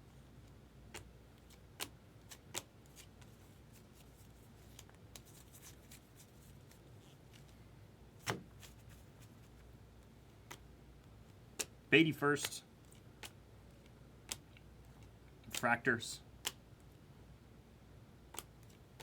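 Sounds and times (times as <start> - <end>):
cards being flipped through: 0.9 - 7.6, 8.2 - 9.7, 11.6 - 16.6.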